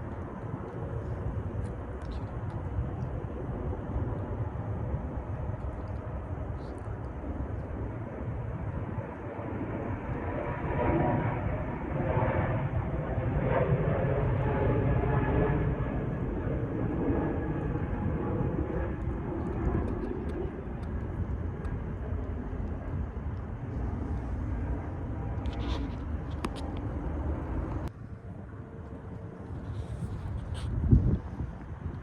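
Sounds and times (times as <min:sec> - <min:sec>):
jet airliner engine rushing: 0:00.0 - 0:32.0.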